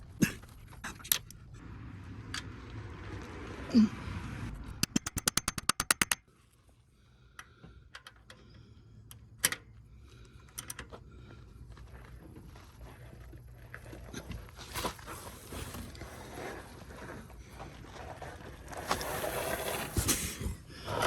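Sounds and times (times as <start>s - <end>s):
light tool clinks and taps: 4.8s - 6.2s
socket ratchet clicking: 4.8s - 6.2s.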